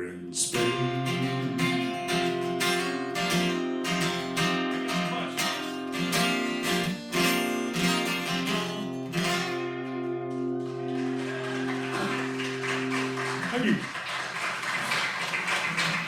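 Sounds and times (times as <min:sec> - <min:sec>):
acoustic guitar strumming chords: 0:00.0 - 0:13.6.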